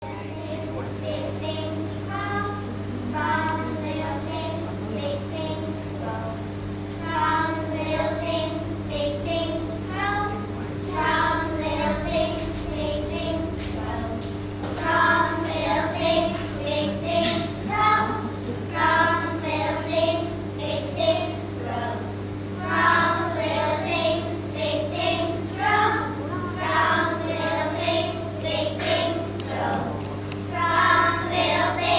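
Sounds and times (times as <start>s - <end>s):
steady low hum: 0.0s - 31.9s
children singing in unison: 30.6s - 31.9s.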